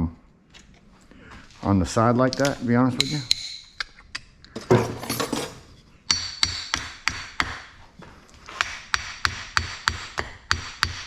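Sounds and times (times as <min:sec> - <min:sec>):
hammer striking metal: 0:06.1 - 0:07.6.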